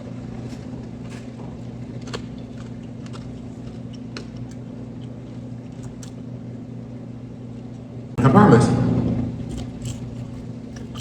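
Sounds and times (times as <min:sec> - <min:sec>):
person chewing food: 0:00.3 - 0:06.3, 0:09.4 - 0:11.0
low hum: 0:01.5 - 0:11.0.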